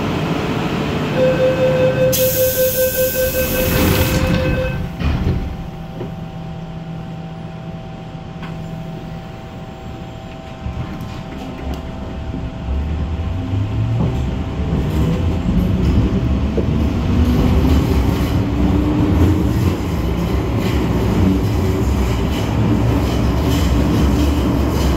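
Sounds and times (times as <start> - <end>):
train running hum: 0.0 - 24.9
train air hiss: 2.1 - 4.2.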